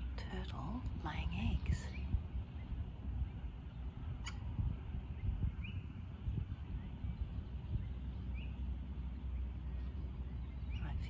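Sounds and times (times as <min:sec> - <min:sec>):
wind rumble on microphone: 0:00.0 - 0:11.0
short bird calls: 0:04.2 - 0:04.6.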